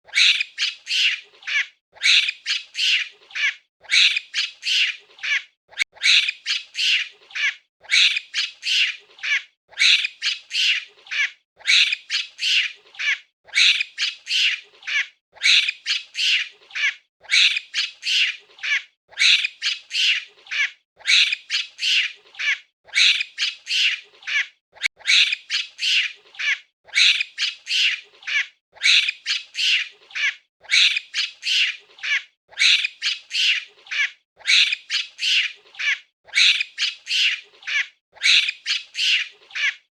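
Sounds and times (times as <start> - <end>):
monkey squawking cries: 0.1 - 39.9.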